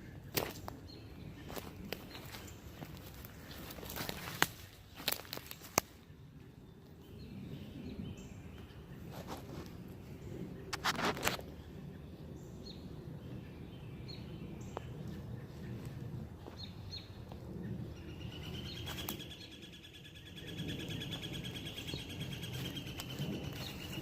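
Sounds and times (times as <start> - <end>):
birds chirping: 0.0 - 24.0
low outdoor rumble: 0.0 - 24.0
fast steady bird trill: 13.8 - 24.0.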